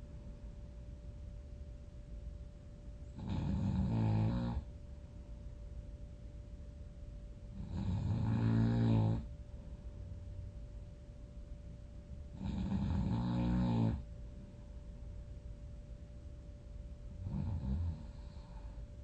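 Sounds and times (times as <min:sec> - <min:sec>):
person snoring loudly: 0:03.2 - 0:04.6, 0:07.6 - 0:09.3, 0:12.4 - 0:14.0, 0:17.2 - 0:18.4
quiet breathing: 0:17.2 - 0:19.0.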